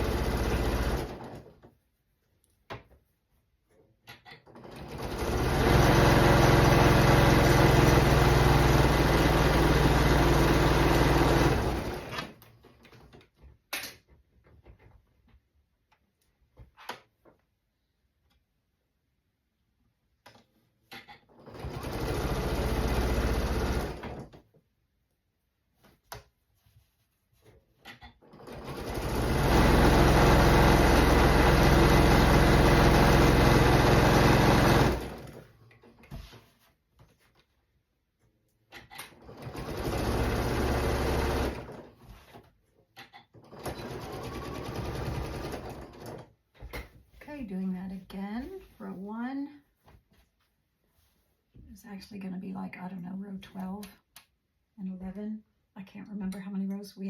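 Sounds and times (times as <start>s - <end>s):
sewing machine stitching: 0.0s - 1.7s, 4.1s - 13.2s, 20.9s - 24.4s, 27.8s - 36.0s, 38.7s - 42.4s, 43.0s - 46.3s.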